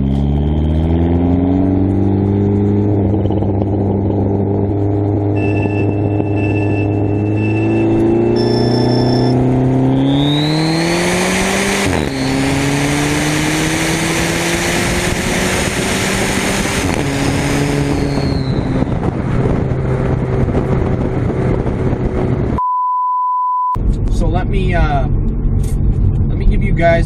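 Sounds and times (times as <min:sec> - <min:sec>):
car engine revving: 0:00.0 - 0:22.6
beep tone: 0:05.3 - 0:10.6, 0:22.6 - 0:23.8
turbo whistle: 0:05.4 - 0:09.4, 0:10.0 - 0:10.7, 0:11.9 - 0:12.6, 0:17.8 - 0:18.8.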